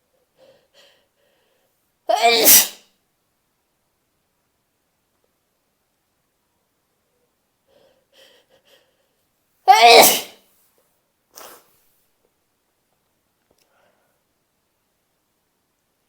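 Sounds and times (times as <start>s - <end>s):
breathing: 0.1s - 1.8s, 7.6s - 9.3s, 13.6s - 14.3s
woman sneezing: 2.1s - 2.8s, 9.7s - 10.4s.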